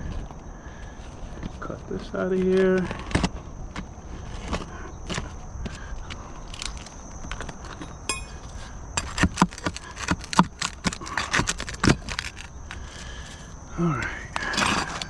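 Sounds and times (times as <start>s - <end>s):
hand tools clinking on nails: 7.7s - 8.6s.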